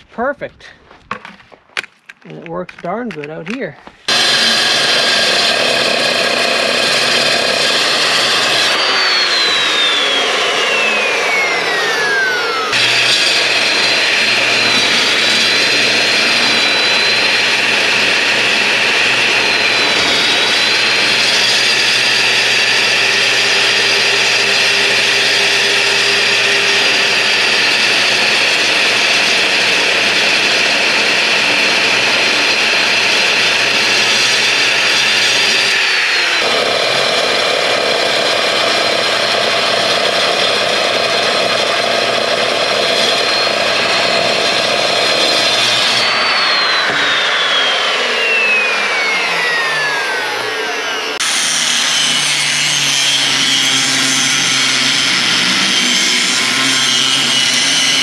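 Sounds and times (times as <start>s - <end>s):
power tool whining on steel: 4.0s - 58.0s.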